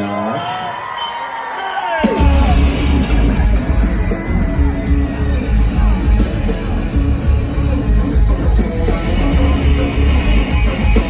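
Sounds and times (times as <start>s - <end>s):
drums: 0.0s - 11.0s
distorted electric guitar riff: 2.0s - 11.0s
heavy pulsing bass: 2.2s - 11.0s.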